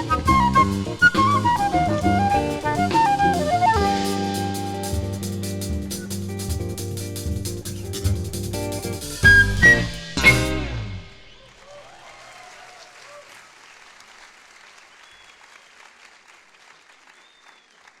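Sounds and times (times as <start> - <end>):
band playing: 0.0 - 11.6
audience applauding: 11.4 - 18.0.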